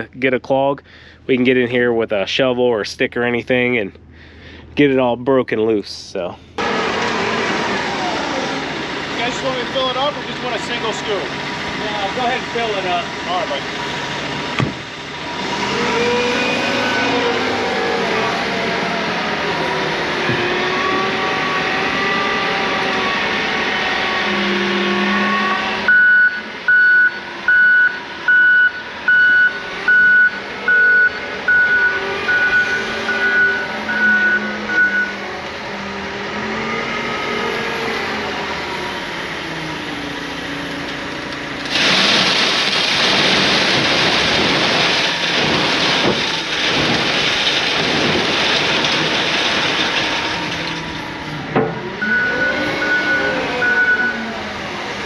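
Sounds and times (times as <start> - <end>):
diesel engine running: 0.0 - 55.0
backup alarm beeping: 25.9 - 35.2, 52.0 - 54.3
salt pouring into truck: 41.6 - 51.1.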